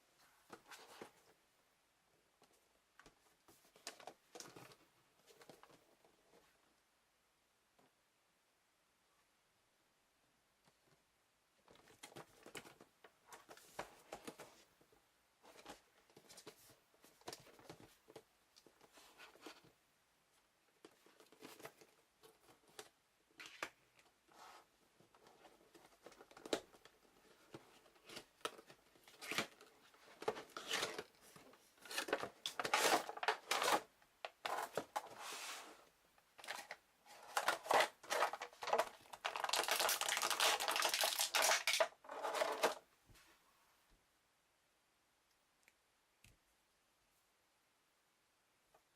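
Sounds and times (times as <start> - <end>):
packaging tearing and crinkling: 31.9 - 33.8, 36.4 - 42.8.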